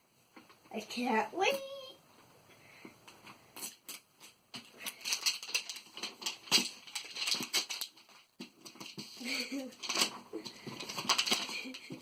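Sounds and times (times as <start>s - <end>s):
plastic wrapping crinkling: 3.6s - 12.0s.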